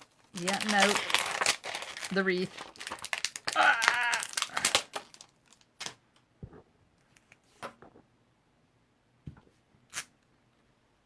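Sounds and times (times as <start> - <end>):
sharp crinkle: 0.0 - 6.0.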